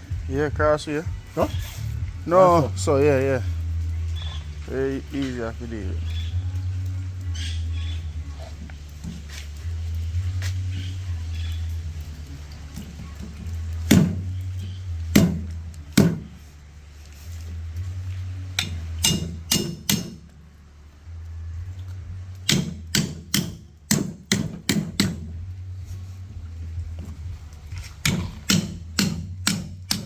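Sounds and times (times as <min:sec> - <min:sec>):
steady low hum: 0:00.0 - 0:30.0
machete chopping fish: 0:13.9 - 0:14.3, 0:15.1 - 0:16.3, 0:28.0 - 0:30.0.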